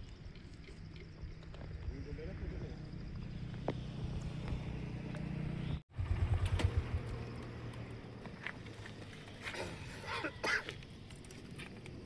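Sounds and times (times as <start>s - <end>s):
vehicle engine low rumble: 0.0s - 9.4s.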